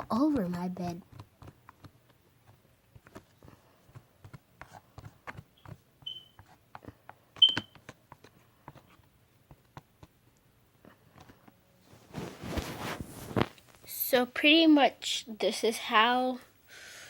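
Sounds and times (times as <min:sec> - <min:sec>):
high squeaks of slime: 0:04.6 - 0:06.6.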